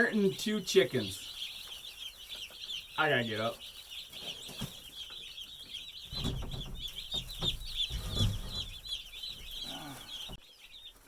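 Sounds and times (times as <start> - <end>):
chicks peeping: 0.0 - 11.0
low thumps and rustling: 6.0 - 9.6.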